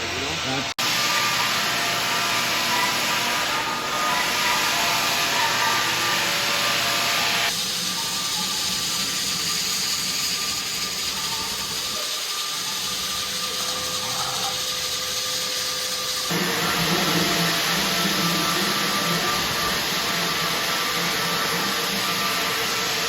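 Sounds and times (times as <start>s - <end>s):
floor sanding machine running: 0.0s - 23.0s.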